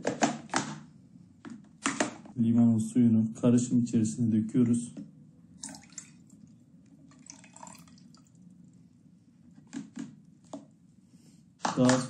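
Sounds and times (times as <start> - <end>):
juice pouring into a jar: 5.6 - 8.6
liquid dripping and trickling: 5.6 - 8.8.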